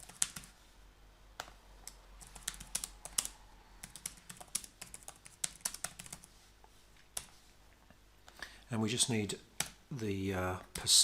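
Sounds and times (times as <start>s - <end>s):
typing on computer keyboard: 0.0s - 0.5s, 1.4s - 6.3s.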